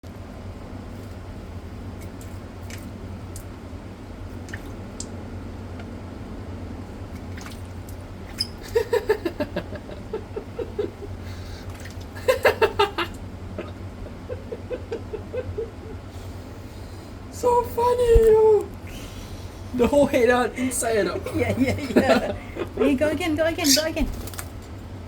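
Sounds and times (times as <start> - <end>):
person laughing: 8.6 - 16.3, 21.2 - 23.1.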